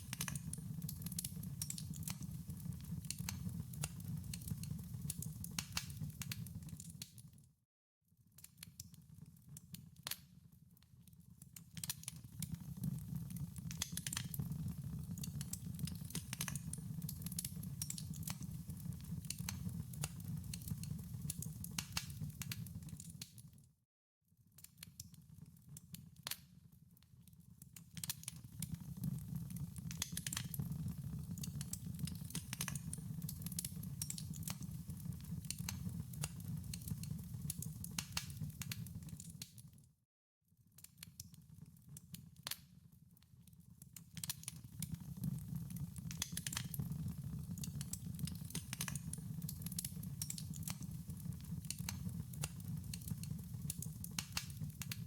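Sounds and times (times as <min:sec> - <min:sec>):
wood fire crackling: 0:00.0 - 0:07.3, 0:11.6 - 0:23.3, 0:27.8 - 0:39.5, 0:44.2 - 0:55.0.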